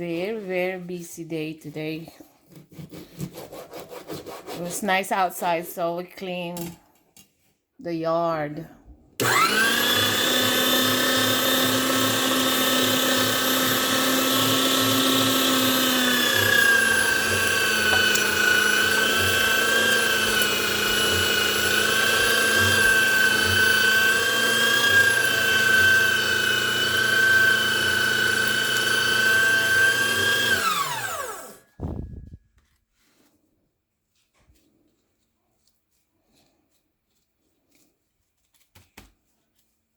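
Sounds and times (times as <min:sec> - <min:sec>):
meat grinder motor whining: 0:09.2 - 0:32.0.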